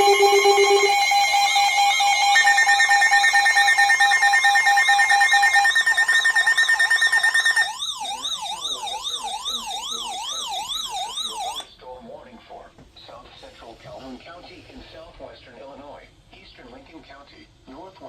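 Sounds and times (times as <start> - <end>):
pulsing beep: 0.0 - 11.6
siren wailing up and down: 0.0 - 11.6
steady high tone: 0.0 - 11.6.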